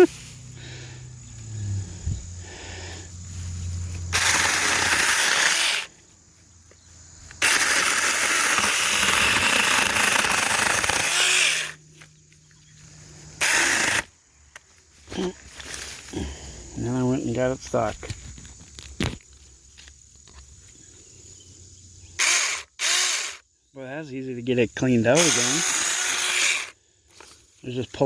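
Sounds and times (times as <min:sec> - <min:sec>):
electric mini chainsaw running: 0:03.9 - 0:06.0, 0:07.4 - 0:12.0, 0:13.4 - 0:14.1, 0:22.2 - 0:23.4, 0:25.2 - 0:26.8.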